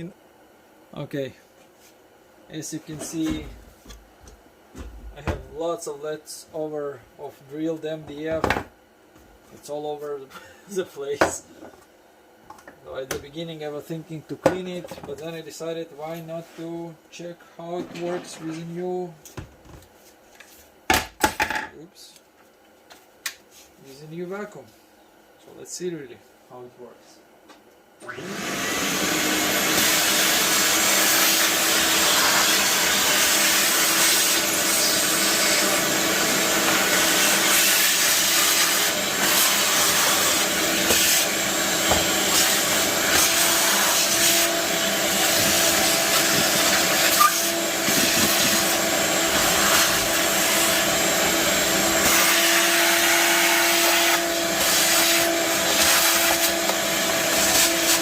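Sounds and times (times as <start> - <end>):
shop vacuum humming: 1.8 - 8.6, 28.0 - 58.0.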